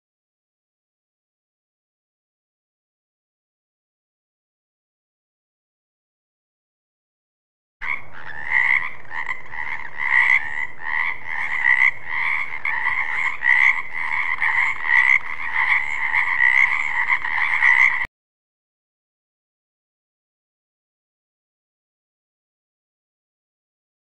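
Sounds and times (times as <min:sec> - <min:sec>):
frog croaking: 0:07.8 - 0:18.1.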